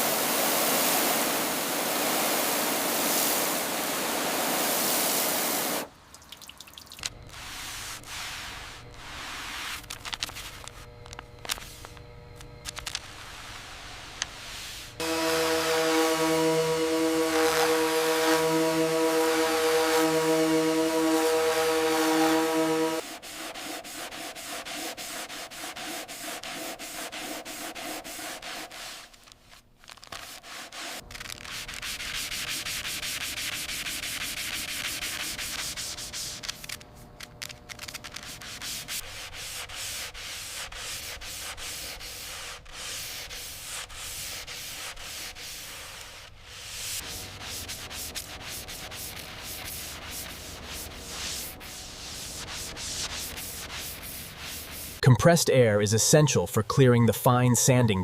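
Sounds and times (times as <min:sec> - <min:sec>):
sanding car body panel: 0:07.3 - 0:09.8, 0:13.6 - 0:29.2, 0:30.1 - 0:36.8, 0:37.8 - 0:55.0.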